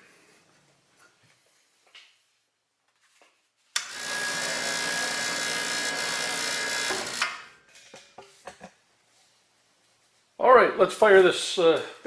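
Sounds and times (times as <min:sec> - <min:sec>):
small electric motor running: 0:03.8 - 0:07.5.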